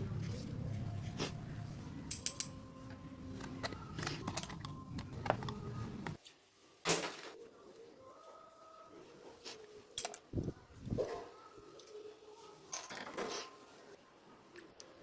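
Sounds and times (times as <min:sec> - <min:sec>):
low rumble: 0:00.0 - 0:02.1
small mechanical parts clicking: 0:02.1 - 0:02.6.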